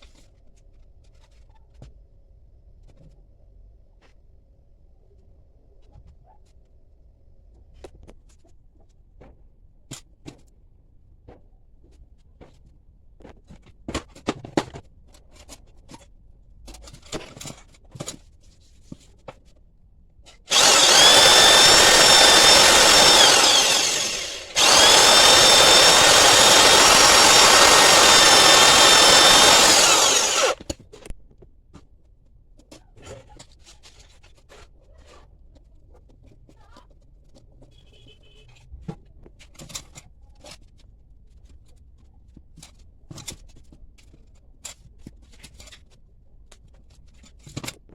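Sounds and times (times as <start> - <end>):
electric drill running: 20.5 - 30.6.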